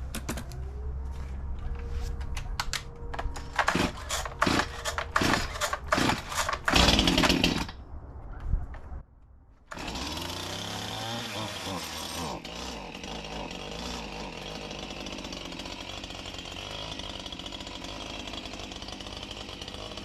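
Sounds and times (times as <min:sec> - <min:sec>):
chainsaw engine bursts: 0:03.5 - 0:07.7, 0:09.7 - 0:20.0.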